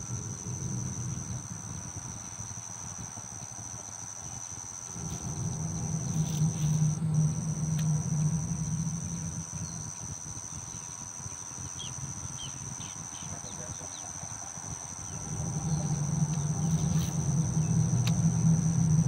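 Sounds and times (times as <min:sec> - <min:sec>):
insects droning: 0:00.0 - 0:19.0
low rumble: 0:04.8 - 0:19.0.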